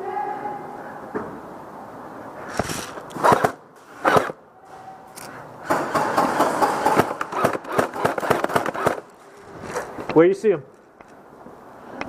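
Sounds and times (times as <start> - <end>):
airsoft guns firing on full auto: 3.1 - 4.4, 5.7 - 9.1.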